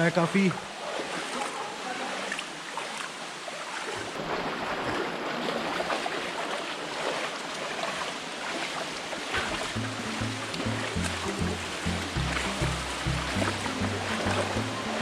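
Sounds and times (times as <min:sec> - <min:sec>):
shallow stream flowing: 0:00.0 - 0:15.0
waterfall rushing: 0:09.4 - 0:15.0.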